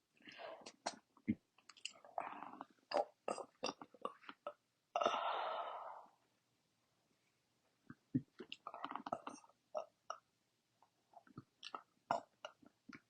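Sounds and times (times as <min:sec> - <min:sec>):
breathy burp attempt: 0:02.2 - 0:04.2.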